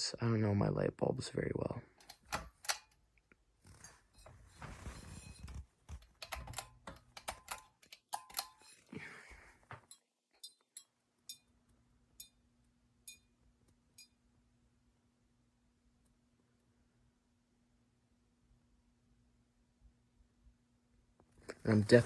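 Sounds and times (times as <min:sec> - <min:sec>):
sharp clicks and rustling: 0:03.6 - 0:08.9.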